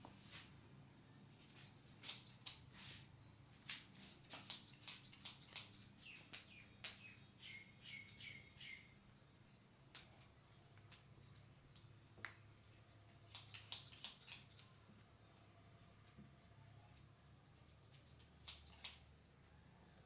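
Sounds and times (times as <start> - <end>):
small bird chirping: 2.3 - 11.6.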